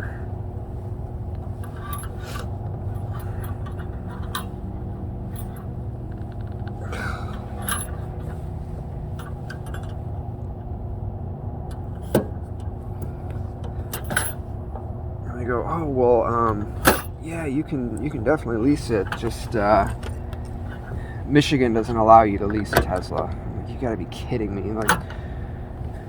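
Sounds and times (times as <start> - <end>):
steady low hum: 0.0 - 26.0
metallic clinks and scrapes of tools: 1.5 - 4.6, 7.4 - 8.4, 13.7 - 14.5.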